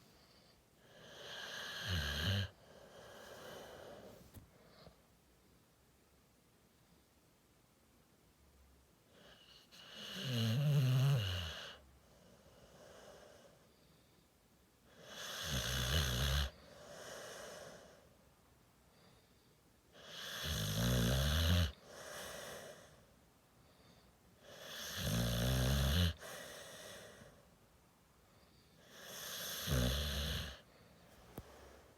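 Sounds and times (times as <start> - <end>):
soft breath: 2.5 - 5.7, 16.6 - 19.8, 21.8 - 24.7, 26.2 - 29.0, 30.5 - 31.9.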